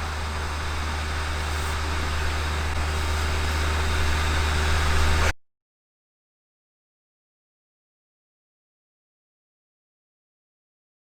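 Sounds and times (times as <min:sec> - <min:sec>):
electric blower fan running: 0:00.0 - 0:05.3.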